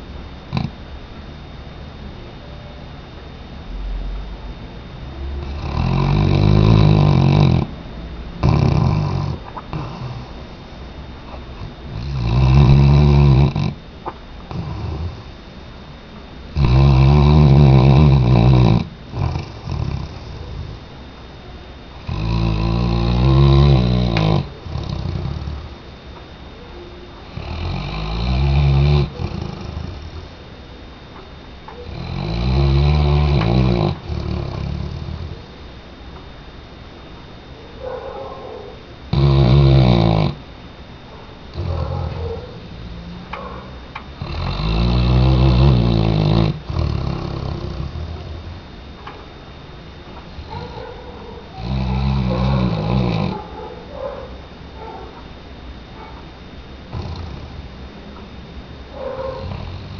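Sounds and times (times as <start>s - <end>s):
dog snoring: 0.0s - 0.8s, 5.1s - 7.8s, 8.4s - 10.6s, 11.2s - 15.5s, 16.5s - 20.9s, 21.9s - 25.8s, 26.6s - 30.4s, 31.7s - 35.6s, 37.6s - 40.5s, 41.5s - 48.6s, 50.1s - 55.2s, 56.8s - 57.8s, 58.9s - 59.9s.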